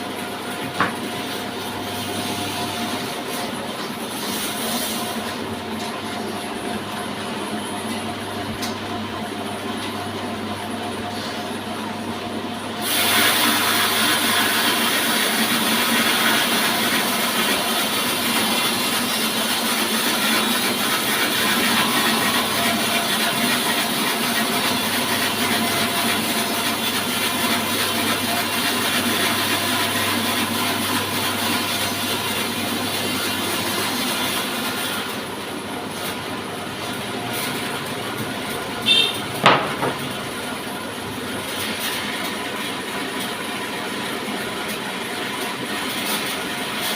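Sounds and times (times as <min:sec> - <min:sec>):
saw cutting through log: 0:12.8 - 0:36.2
sharp knocks: 0:39.4 - 0:40.0.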